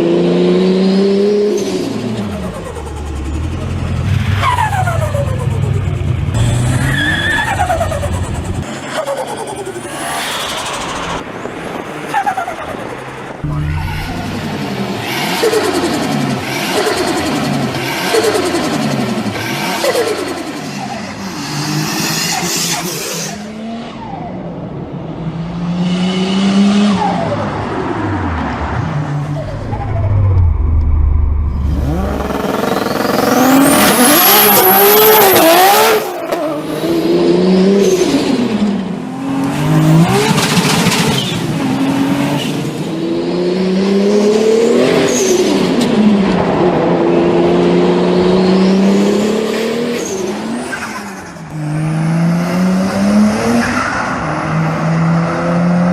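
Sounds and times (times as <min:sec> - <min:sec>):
car engines revving: 0:00.0 - 0:55.9
turbo whine: 0:13.4 - 0:15.8.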